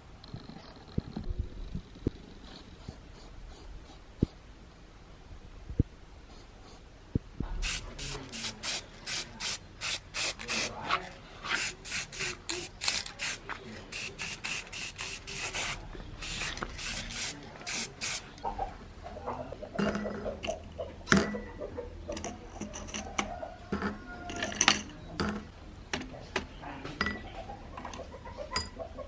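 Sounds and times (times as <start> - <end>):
hand rubbing back and forth: 7.6 - 18.3.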